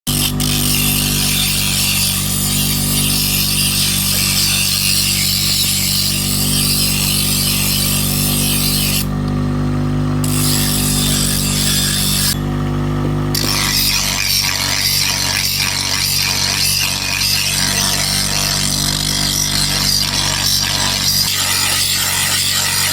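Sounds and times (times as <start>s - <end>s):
machine motor humming: 7.9s - 14.8s.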